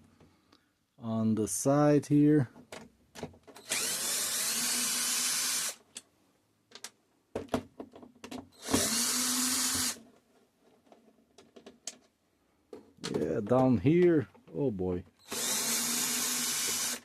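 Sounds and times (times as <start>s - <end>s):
power screwdriver running: 3.6s - 5.8s, 8.6s - 10.0s, 15.2s - 17.0s
screws and plastic clicking: 7.9s - 12.1s, 15.2s - 17.0s.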